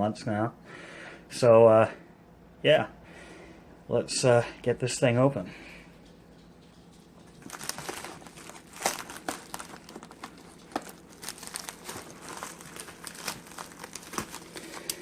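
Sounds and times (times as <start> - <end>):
plastic bag crinkling: 7.2 - 15.0
bag snapping: 7.4 - 15.0.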